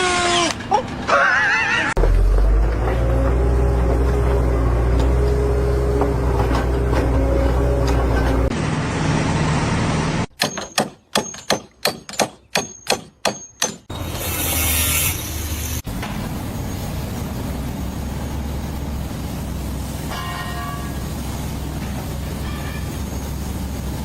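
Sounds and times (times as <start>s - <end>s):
low engine rumble: 2.0s - 10.3s, 15.2s - 24.0s
hammering on metal: 10.4s - 13.9s
loud hiss: 14.0s - 24.0s.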